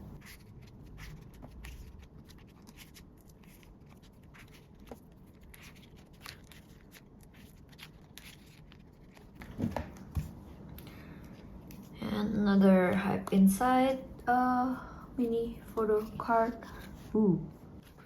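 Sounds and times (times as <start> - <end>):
rustling of plastic sleeves: 0.0 - 12.0.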